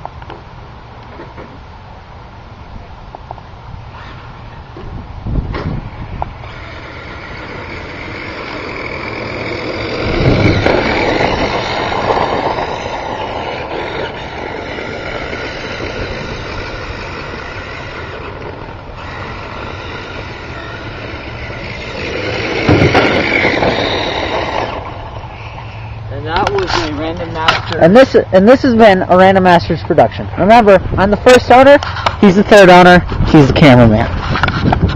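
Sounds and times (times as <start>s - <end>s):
toy cars whining: 3.9s - 4.8s, 5.8s - 27.2s.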